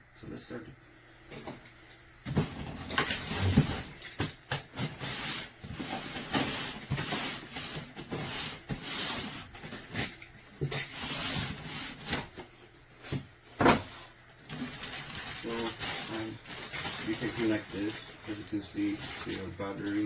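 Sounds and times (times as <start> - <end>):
packaging rustling: 14.4 - 20.0.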